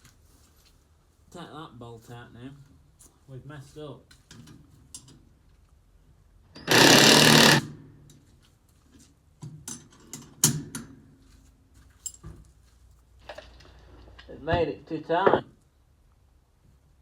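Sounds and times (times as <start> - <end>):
impact gun hammering: 6.7 - 7.6
metallic clinks and knocks: 11.9 - 12.5.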